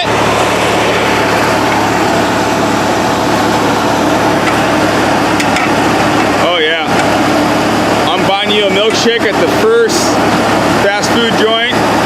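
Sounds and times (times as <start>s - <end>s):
even rushing noise: 0.0s - 9.4s
vehicle engine idling: 0.0s - 12.0s.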